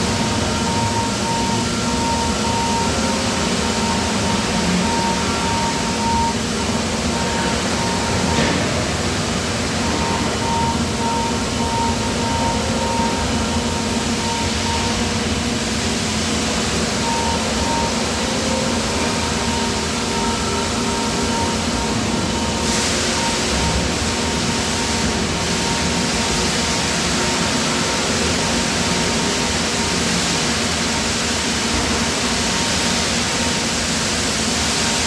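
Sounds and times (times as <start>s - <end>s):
high tone: 0.0s - 23.8s
factory machinery din: 0.0s - 35.0s.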